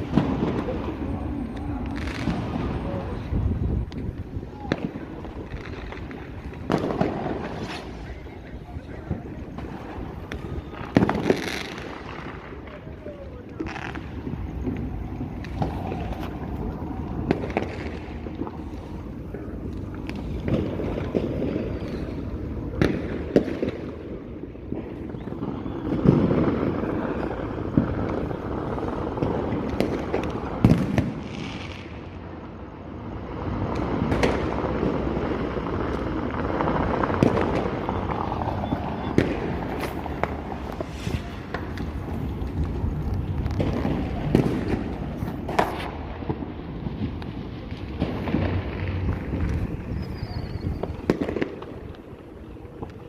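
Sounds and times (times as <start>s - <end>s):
sharp firework bangs: 0.0s - 12.6s, 24.7s - 32.0s, 33.4s - 47.2s, 47.8s - 52.0s
rumble of firework bursts: 0.0s - 53.0s.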